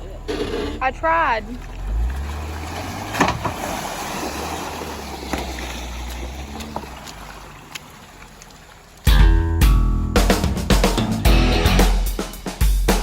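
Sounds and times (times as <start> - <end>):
wind and mud noise: 0.0 - 9.2
vehicle engine humming: 0.0 - 11.8
loud music with guitar and drums: 9.1 - 13.0.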